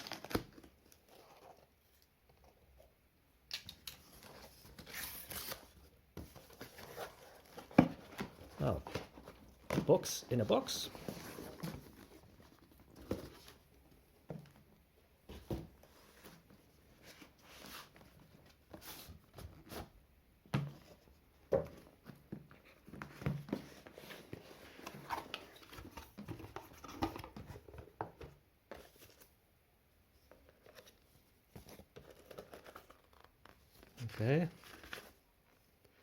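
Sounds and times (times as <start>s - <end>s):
soft cardboard rustling: 4.1s - 29.4s, 30.0s - 36.0s
cardboard knocks and scrapes: 6.2s - 9.9s.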